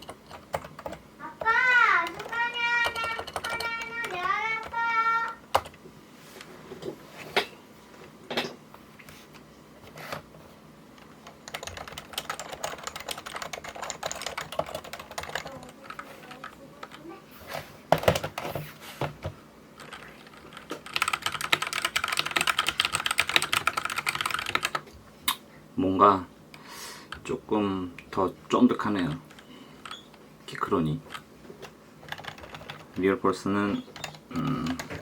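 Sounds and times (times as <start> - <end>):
fast typing on a keyboard: 0.0 - 5.8, 11.0 - 17.1, 18.0 - 18.5, 19.8 - 24.9, 32.0 - 33.0, 34.0 - 35.0.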